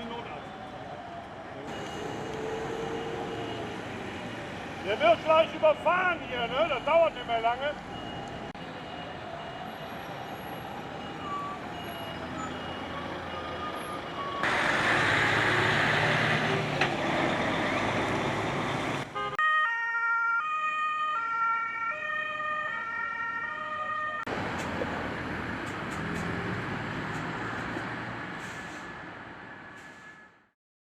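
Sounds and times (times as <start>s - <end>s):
two-tone siren: 0.0s - 4.5s, 7.9s - 14.5s, 19.2s - 24.3s.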